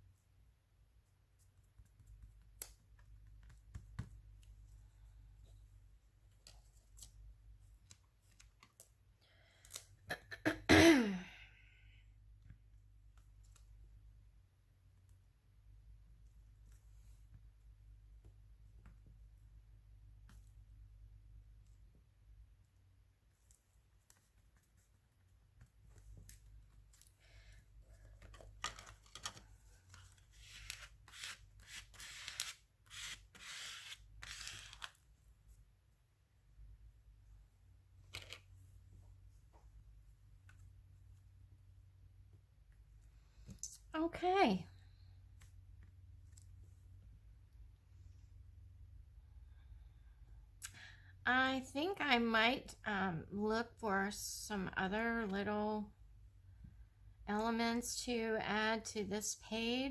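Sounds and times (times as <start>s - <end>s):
person coughing: 10.1s - 11.5s
paper rustling and scraping: 28.3s - 35.0s.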